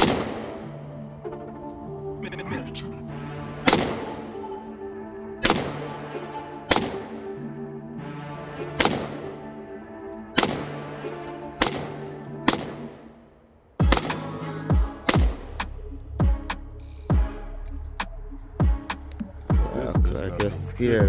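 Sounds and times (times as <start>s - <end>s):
rifle shots with echo: 0.0s - 0.9s, 3.6s - 4.8s, 5.4s - 7.4s, 8.7s - 15.8s
background music with bass line: 13.8s - 21.0s.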